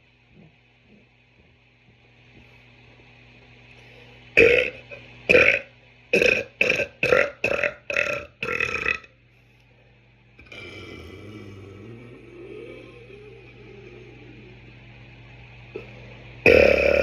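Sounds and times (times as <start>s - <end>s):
man burping: 4.4s - 9.1s, 10.4s - 14.4s, 16.5s - 17.0s.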